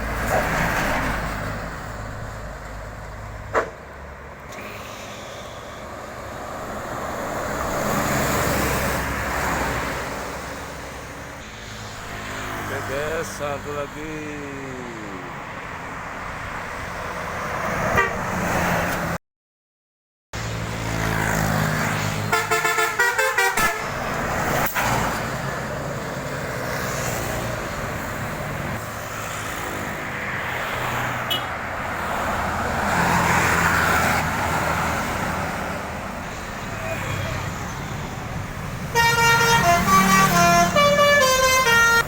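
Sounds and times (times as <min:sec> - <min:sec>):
passing traffic and bus engines: 0:00.0 - 0:19.2, 0:20.4 - 0:42.0
bus horn playing musical tones: 0:17.9 - 0:18.3, 0:22.3 - 0:24.0, 0:38.9 - 0:42.0.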